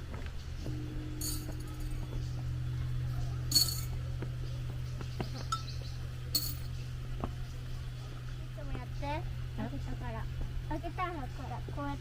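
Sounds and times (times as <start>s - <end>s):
steady low hum: 0.0s - 12.0s
bright clinks: 0.7s - 2.4s, 3.0s - 6.8s.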